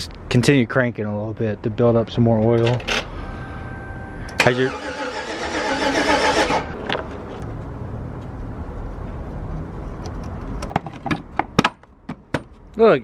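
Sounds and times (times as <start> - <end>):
starter motor cranking engine: 4.4 - 6.8.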